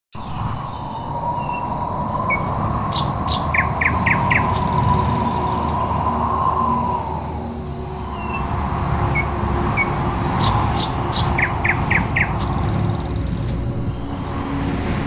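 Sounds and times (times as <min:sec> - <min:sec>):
songbirds chirping: 0:00.2 - 0:14.3
fast high bird trill: 0:02.9 - 0:05.8, 0:10.4 - 0:13.6.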